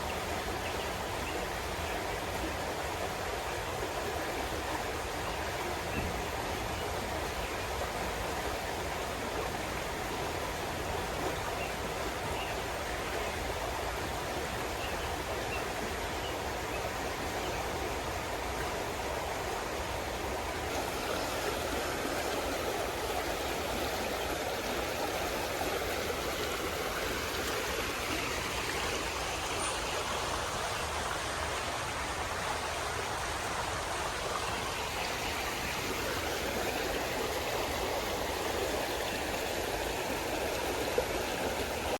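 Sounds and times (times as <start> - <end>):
running water rushing: 0.0 - 41.9.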